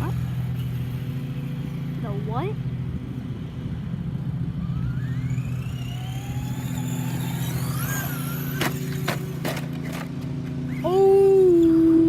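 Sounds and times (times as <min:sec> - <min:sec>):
simulated engine drone: 0:00.0 - 0:12.0
thin whine rising in pitch: 0:03.3 - 0:10.0.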